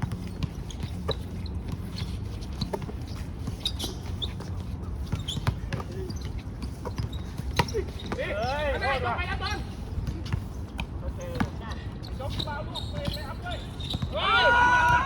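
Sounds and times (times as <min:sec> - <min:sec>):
basketball bouncing on court: 0:04.5 - 0:08.9, 0:09.5 - 0:15.0.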